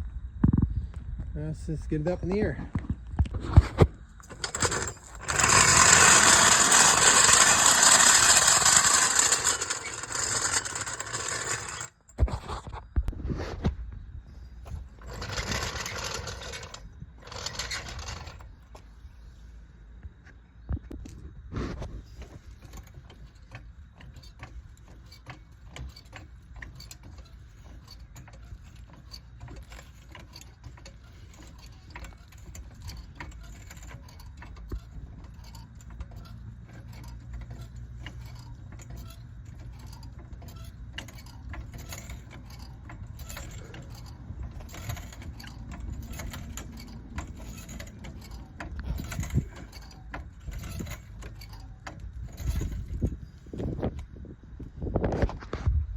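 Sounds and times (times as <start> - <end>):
metal tools clinking and ratcheting: 4.2 - 12.2, 14.9 - 18.4, 22.6 - 53.7.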